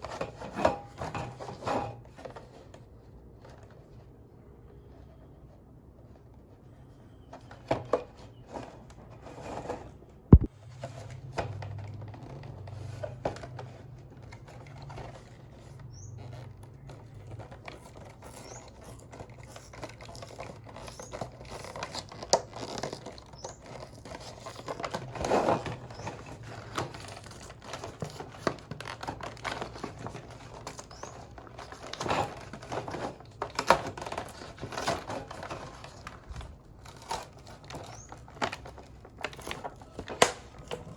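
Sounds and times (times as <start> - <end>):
packaging crinkling and tearing: 13.8 - 40.9.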